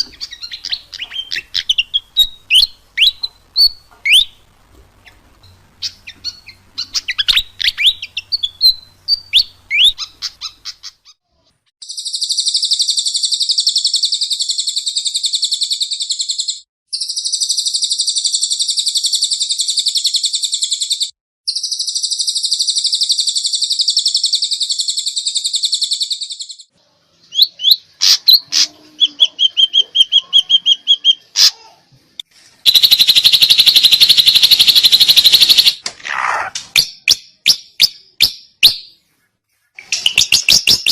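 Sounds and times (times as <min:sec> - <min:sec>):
bird sharp calls: 0:00.0 - 0:04.4, 0:05.8 - 0:11.2
songbird chirps: 0:00.0 - 0:11.2, 0:11.8 - 0:40.9
bird rattling trill: 0:32.6 - 0:35.8.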